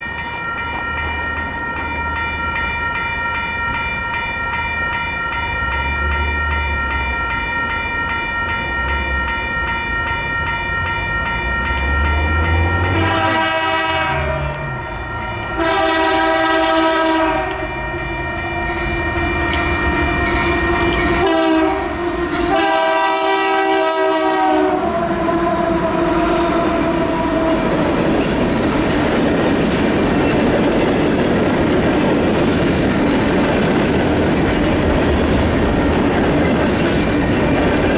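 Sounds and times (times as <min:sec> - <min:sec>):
train wheels rolling on rails: 0:00.0 - 0:37.9
locomotive air horn blasts: 0:12.8 - 0:14.8, 0:15.5 - 0:17.7, 0:21.1 - 0:27.8.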